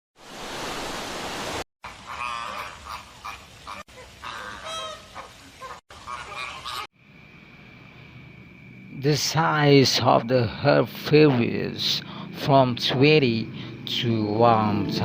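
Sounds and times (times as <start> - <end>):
flamingos honking: 1.8 - 6.9.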